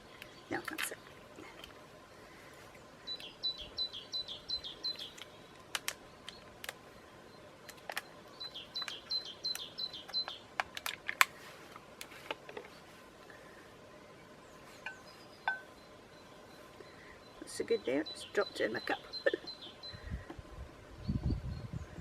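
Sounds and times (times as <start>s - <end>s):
small songbird singing: 3.0s - 10.5s, 13.9s - 20.3s, 21.0s - 22.0s.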